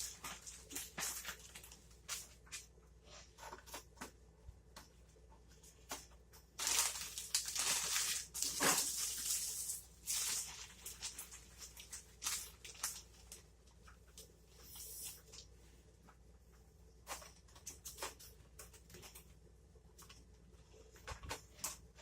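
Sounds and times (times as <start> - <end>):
plastic bag crinkling: 0.0 - 2.5, 6.6 - 13.4.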